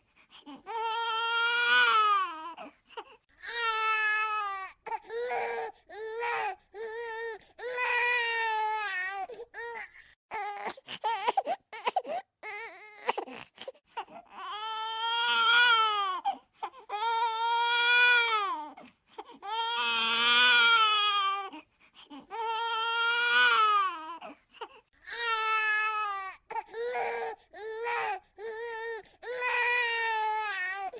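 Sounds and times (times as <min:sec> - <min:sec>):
baby crying: 0:00.7 - 0:02.7, 0:14.0 - 0:18.8, 0:19.4 - 0:24.3, 0:25.1 - 0:30.9.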